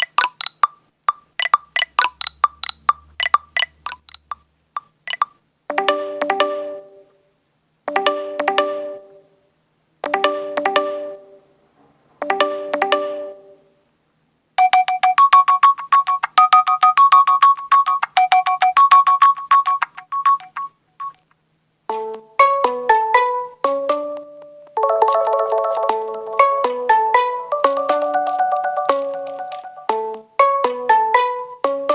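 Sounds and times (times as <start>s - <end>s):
lower melodic tone pattern: 12.2s - 13.6s, 24.8s - 31.3s
high twinkling melody: 14.6s - 21.2s, 24.8s - 29.9s
phone alarm chime: 14.6s - 21.2s.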